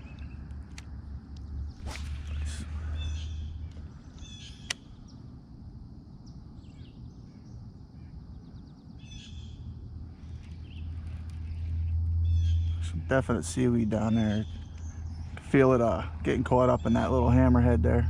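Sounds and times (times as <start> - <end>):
bird calling: 0.0 - 0.5, 1.6 - 5.4, 6.2 - 18.0
sharp clicks: 0.0 - 2.5, 3.7 - 4.9
low steady rumble: 0.0 - 18.0.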